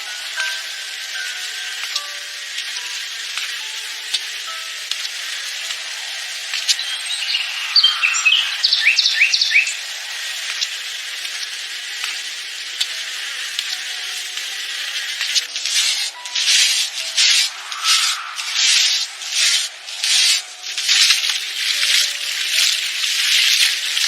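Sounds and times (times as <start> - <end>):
high insect-like hiss: 0.0 - 24.0
scattered clicks: 1.8 - 7.0, 10.4 - 24.0
short bird-like chirps: 6.7 - 9.8
rubbing or scraping strokes: 15.2 - 24.0.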